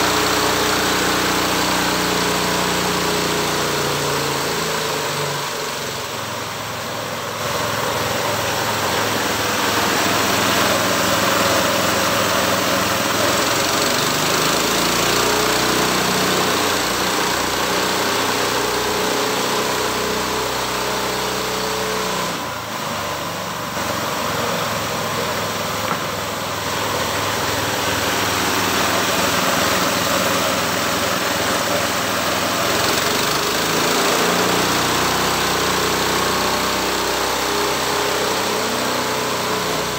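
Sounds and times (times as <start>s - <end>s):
sawmill engine running: 0.0s - 39.9s.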